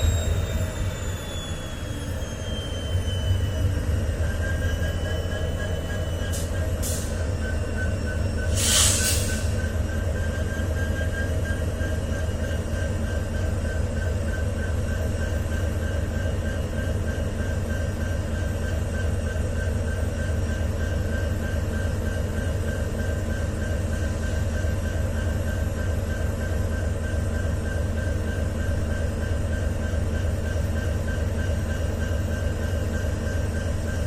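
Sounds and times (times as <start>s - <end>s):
short hiss: 8.5s - 9.5s.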